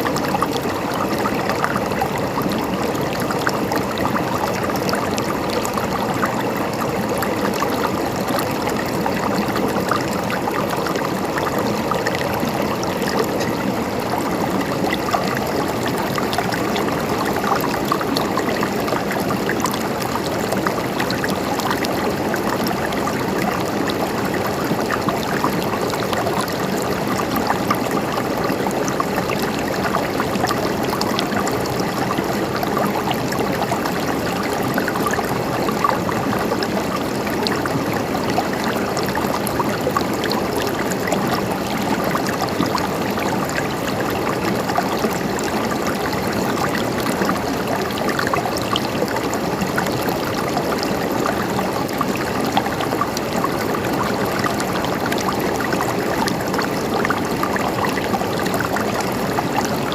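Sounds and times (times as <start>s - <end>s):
water gurgling and trickling: 0.0s - 59.9s.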